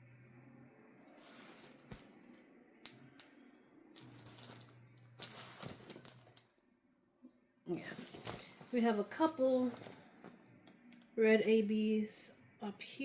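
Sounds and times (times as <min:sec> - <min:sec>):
canvas rustling: 0:01.1 - 0:02.2, 0:04.0 - 0:06.3, 0:07.8 - 0:10.0.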